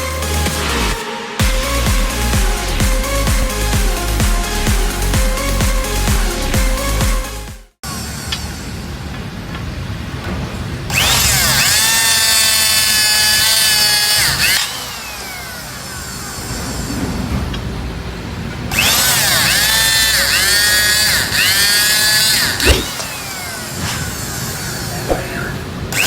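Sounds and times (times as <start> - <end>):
hydraulic cutter motor whining: 10.9 - 17.7, 18.7 - 26.0
steel bar cracking as it shears: 21.6 - 24.1.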